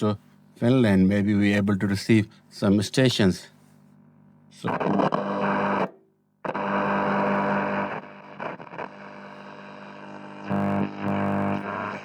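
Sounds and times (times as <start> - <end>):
radio hum and static: 0.0 - 12.0
radio station music: 4.6 - 5.8.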